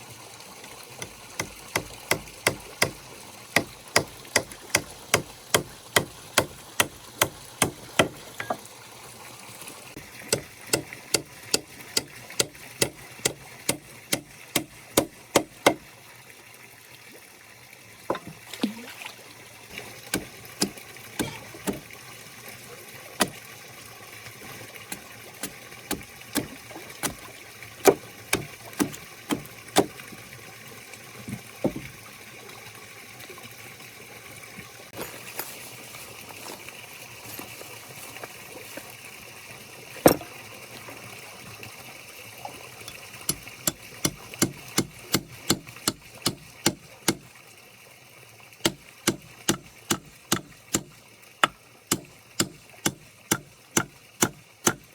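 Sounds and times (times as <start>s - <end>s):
chopping into wood: 1.1s - 3.0s, 3.6s - 8.6s, 10.3s - 15.8s, 20.1s - 21.9s, 23.2s - 23.4s, 24.9s - 27.2s, 27.8s - 30.0s, 40.1s - 40.3s, 43.3s - 47.3s, 48.6s - 54.9s.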